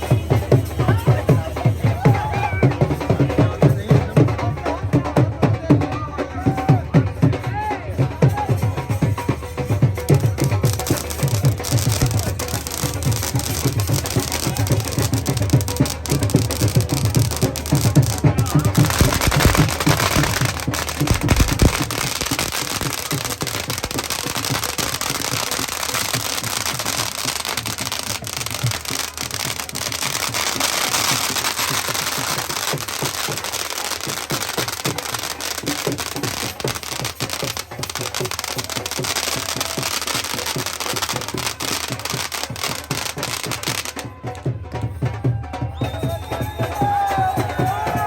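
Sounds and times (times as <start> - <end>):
firecrackers crackling bangs: 8.8 - 44.4.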